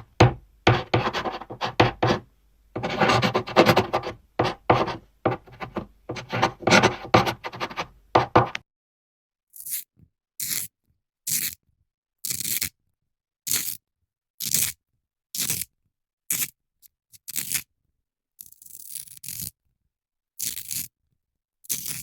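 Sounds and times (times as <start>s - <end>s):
scissors cutting paper: 0.7s - 2.2s, 2.8s - 8.6s.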